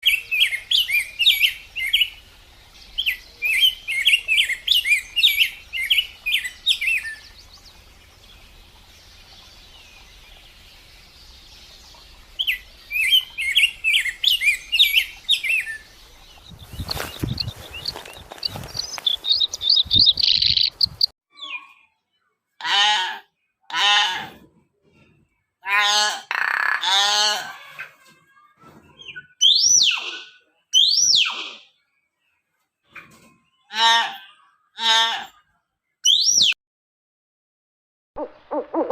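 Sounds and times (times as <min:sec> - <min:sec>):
small birds chirping: 0:00.0 - 0:22.4.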